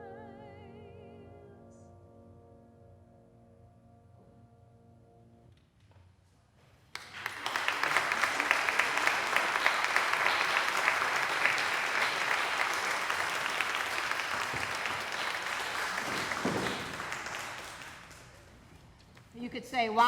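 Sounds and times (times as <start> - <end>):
congregation applauding: 6.9 - 18.8.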